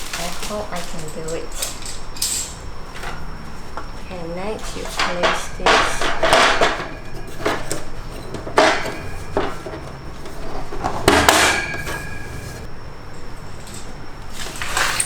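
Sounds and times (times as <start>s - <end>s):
bird cage parts clacking: 0.0s - 3.2s, 4.6s - 12.7s.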